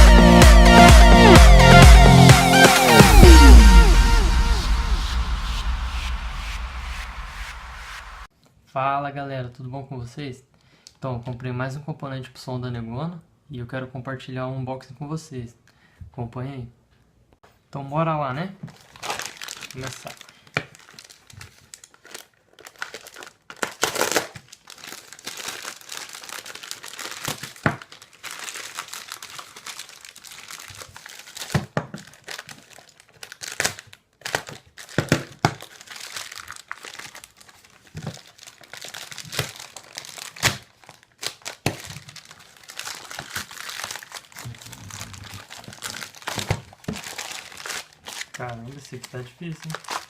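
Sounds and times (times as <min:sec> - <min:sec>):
packaging crinkling and tearing: 0:18.6 - 0:50.0.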